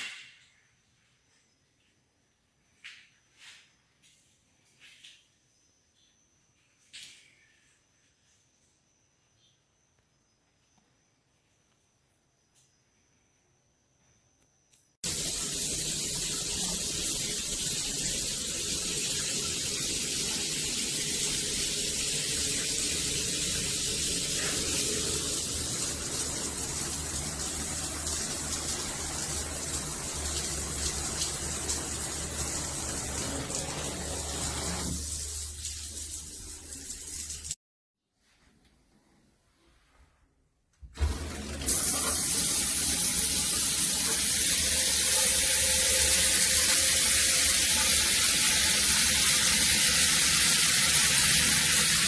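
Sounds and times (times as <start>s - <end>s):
shower water spraying: 15.0s - 37.6s, 41.0s - 52.0s.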